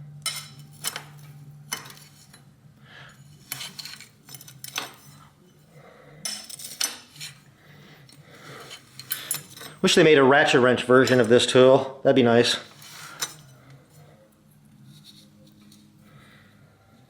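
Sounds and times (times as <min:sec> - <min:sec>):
metal wrench clicks and clinks: 0:08.1 - 0:09.8.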